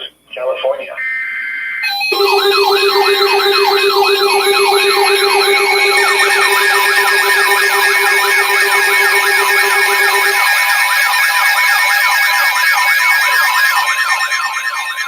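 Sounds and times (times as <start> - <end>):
electronic siren yelp: 1.0 - 15.0
faster siren yelp: 1.0 - 15.0
steady low tone: 2.1 - 10.5.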